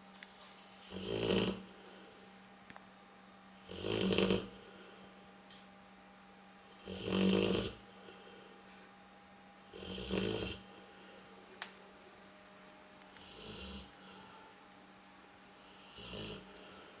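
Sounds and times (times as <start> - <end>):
dog snoring: 0.8 - 2.0, 3.6 - 4.8, 6.7 - 8.4, 9.6 - 11.1, 13.2 - 14.2, 15.6 - 17.0.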